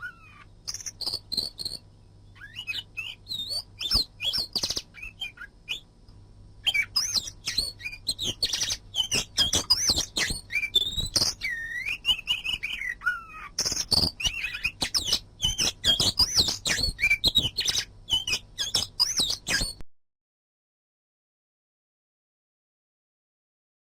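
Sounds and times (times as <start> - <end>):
bird singing chirps and whistles: 0.0 - 5.9, 6.6 - 19.8.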